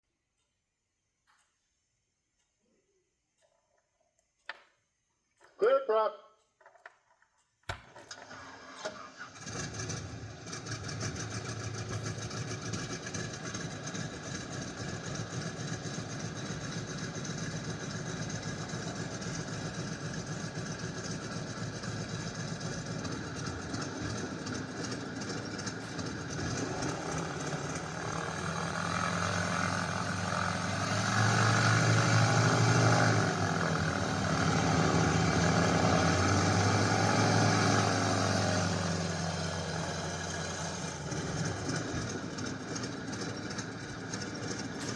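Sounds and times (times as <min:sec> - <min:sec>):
radial aircraft engine idling: 0:07.7 - 0:36.6, 0:38.5 - 0:44.9.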